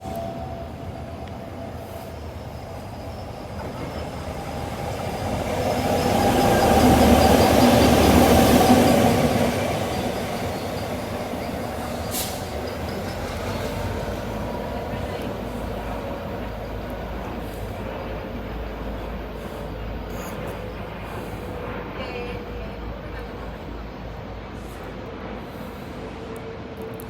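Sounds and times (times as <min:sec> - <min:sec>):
diesel locomotive passing: 0:00.0 - 0:27.0.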